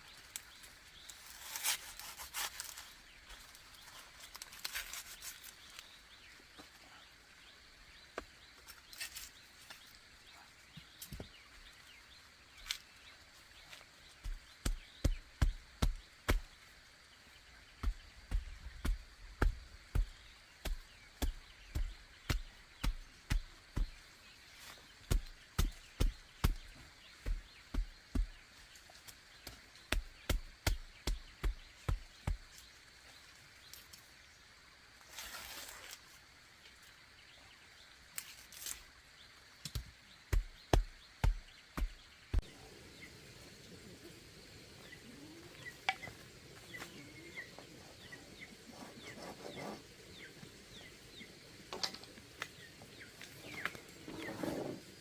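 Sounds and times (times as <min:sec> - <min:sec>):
birds chirping faintly: 0:00.0 - 0:55.0
tool striking bamboo: 0:29.4 - 0:32.4, 0:39.6 - 0:42.4.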